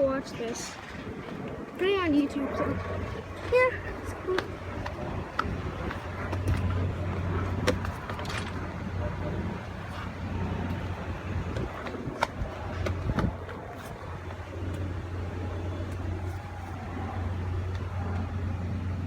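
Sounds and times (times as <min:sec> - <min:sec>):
vehicle engine humming: 0:00.0 - 0:19.0
scattered clicks and knocks: 0:03.3 - 0:14.9.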